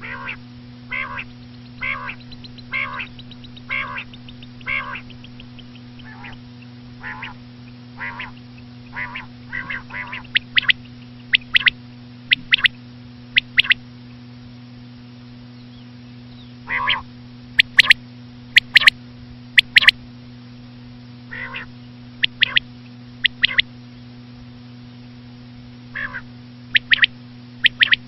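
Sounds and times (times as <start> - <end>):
quail calling: 0.0 - 12.8, 13.4 - 13.8, 16.6 - 18.0, 18.6 - 18.9, 19.6 - 19.9, 21.3 - 23.7, 25.9 - 28.0.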